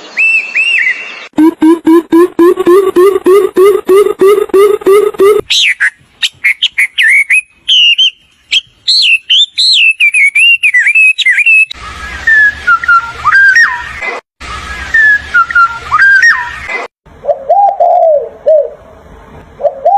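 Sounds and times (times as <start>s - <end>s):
bird singing whistled notes: 0.0s - 1.3s, 5.5s - 13.9s.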